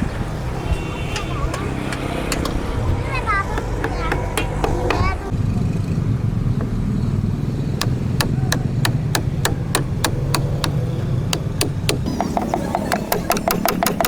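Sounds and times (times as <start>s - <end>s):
tool striking sharply: 3.5s - 5.2s.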